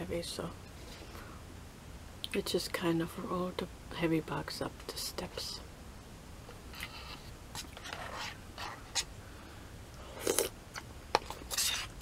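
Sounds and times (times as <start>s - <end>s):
slurping noodle soup: 10.0s - 10.6s, 11.2s - 12.0s
chewing: 10.2s - 11.7s.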